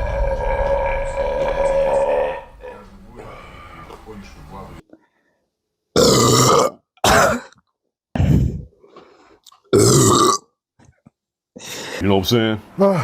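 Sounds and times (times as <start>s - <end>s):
man burping loudly: 0.0s - 2.8s, 6.0s - 7.6s, 9.7s - 10.5s.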